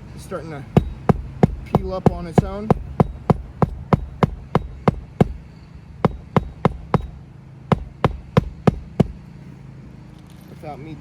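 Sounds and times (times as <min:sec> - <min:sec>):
hammer driving roofing nails: 0:00.7 - 0:09.3.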